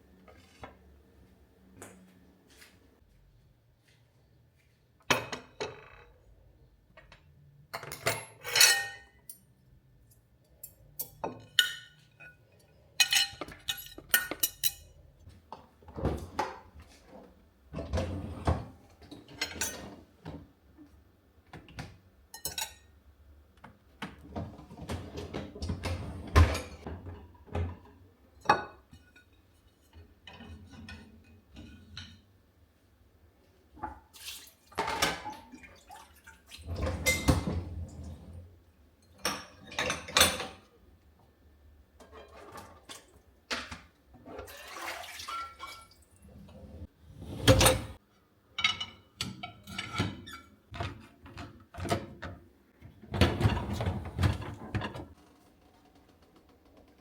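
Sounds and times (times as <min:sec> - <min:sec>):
dishes and cutlery clinking: 0:07.8 - 0:09.5, 0:10.5 - 0:15.0, 0:22.3 - 0:22.9, 0:48.6 - 0:51.9.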